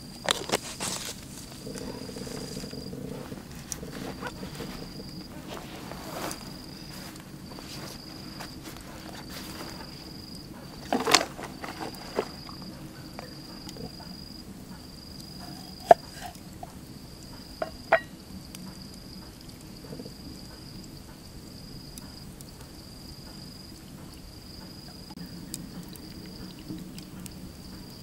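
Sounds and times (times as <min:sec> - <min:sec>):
insect trilling: 0:00.0 - 0:18.2.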